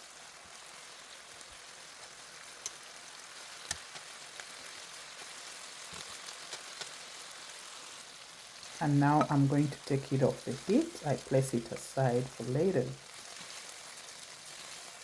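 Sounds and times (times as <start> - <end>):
chicken sizzling in hot oil: 0.0 - 15.0.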